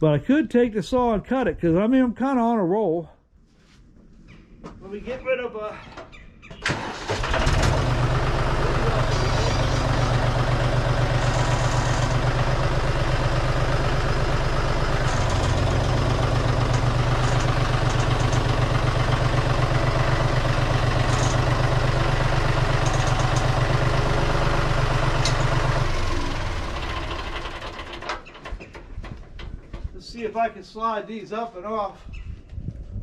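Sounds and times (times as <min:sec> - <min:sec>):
engine idling and shutting off: 0:06.5 - 0:30.0.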